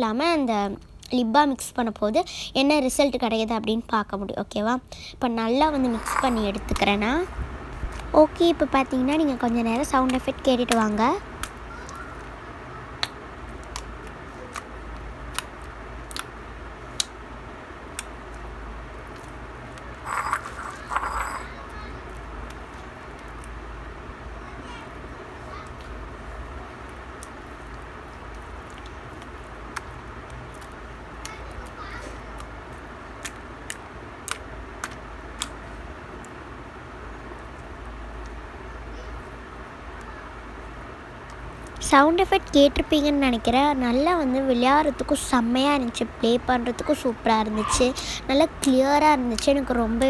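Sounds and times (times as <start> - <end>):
low steady hum: 0.0 - 31.4, 35.0 - 50.0
crackly slime squelches: 4.9 - 23.9, 39.0 - 50.0.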